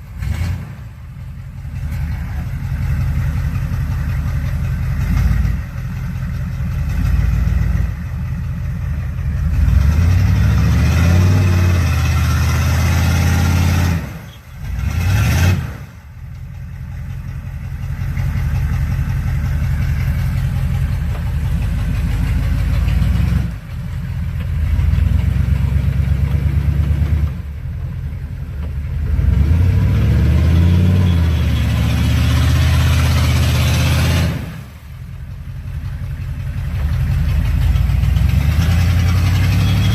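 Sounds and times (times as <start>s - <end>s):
engine revving hard: 0.0s - 0.9s, 9.4s - 15.9s, 29.0s - 34.7s, 37.8s - 39.9s.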